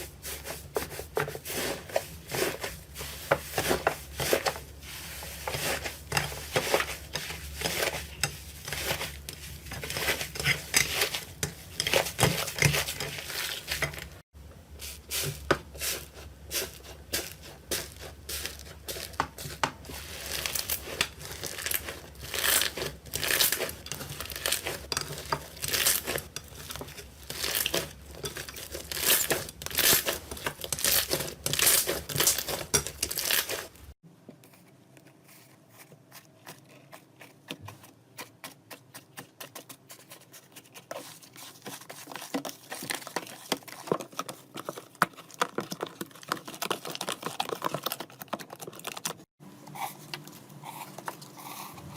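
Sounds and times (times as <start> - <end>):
slime crackling and popping: 20.1 - 26.7.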